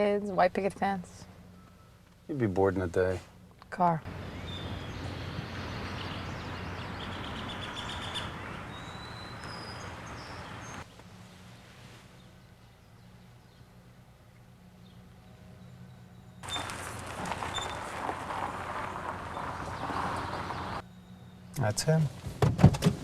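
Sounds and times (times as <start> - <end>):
birds chirping: 3.9 - 10.9, 12.1 - 22.0.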